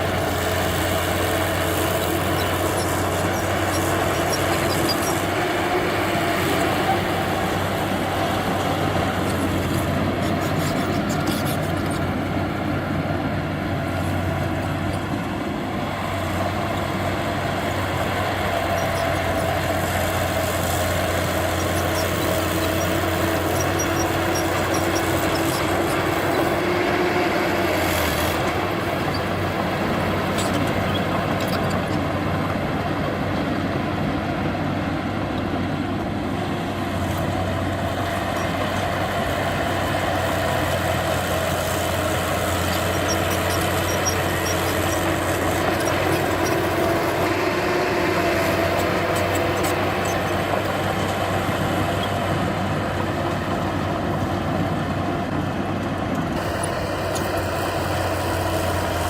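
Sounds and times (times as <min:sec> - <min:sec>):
heavy machinery diesel engine running: 0:00.0 - 0:59.0.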